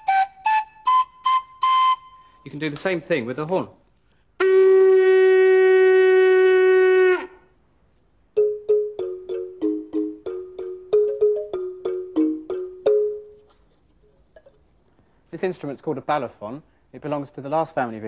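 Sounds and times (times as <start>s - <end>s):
horn blowing long note: 4.4s - 7.4s
balafon notes: 8.4s - 13.5s.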